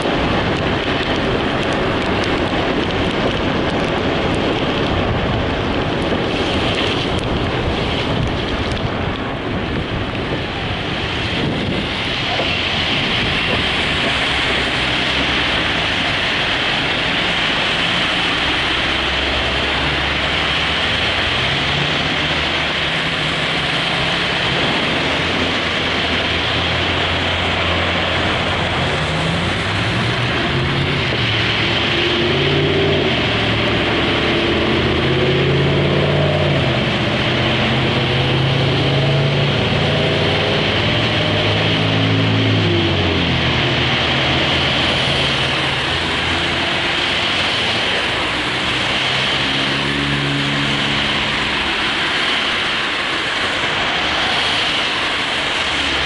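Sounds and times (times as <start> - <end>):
car engine: 0.0 - 56.0
road and wind noise: 0.0 - 56.0.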